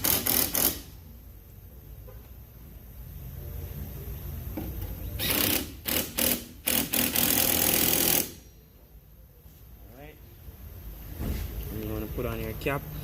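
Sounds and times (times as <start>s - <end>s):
power tool bursts: 0.0s - 0.9s, 5.2s - 8.4s.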